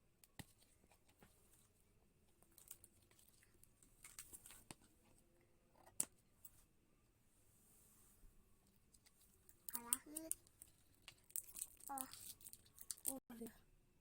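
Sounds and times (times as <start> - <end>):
wrapping crinkling and clicking: 8.9 - 13.2.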